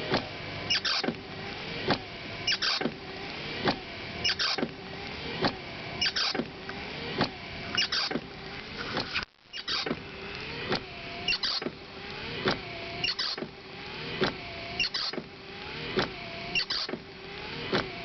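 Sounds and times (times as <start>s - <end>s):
windscreen wipers sweeping: 0.0s - 18.0s
rising and falling whine: 9.5s - 18.0s.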